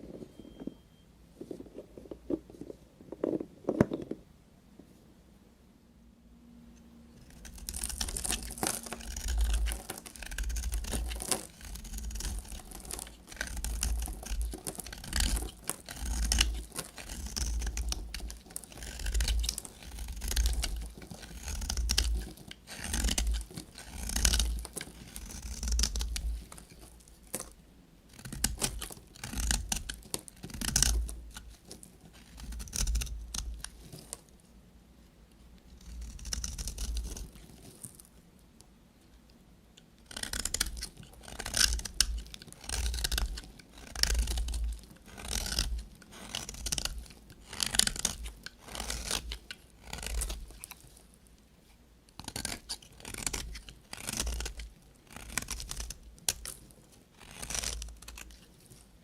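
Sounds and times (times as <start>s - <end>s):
knife cutting through soap: 7.4s - 34.2s, 40.1s - 51.0s, 52.2s - 58.8s.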